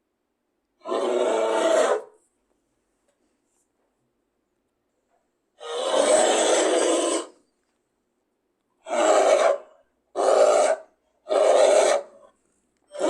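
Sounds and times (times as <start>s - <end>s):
harsh animal roars: 0.8s - 2.1s, 5.6s - 7.4s, 8.8s - 12.3s.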